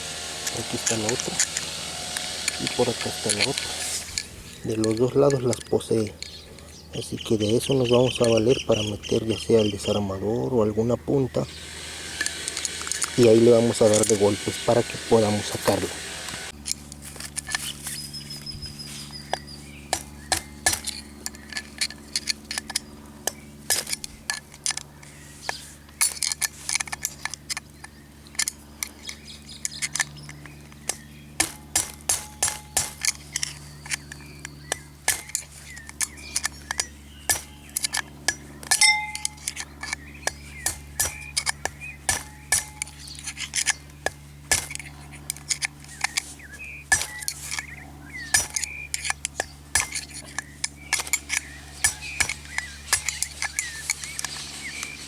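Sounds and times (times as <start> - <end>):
hammer striking steel drift: 30.9 - 33.3, 36.7 - 39.6, 40.2 - 44.9, 46.9 - 54.2.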